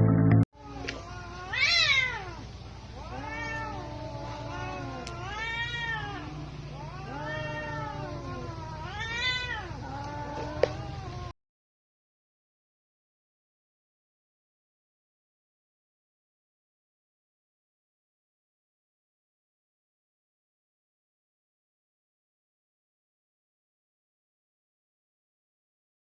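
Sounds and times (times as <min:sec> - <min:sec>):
cats yowling: 0:00.6 - 0:11.4.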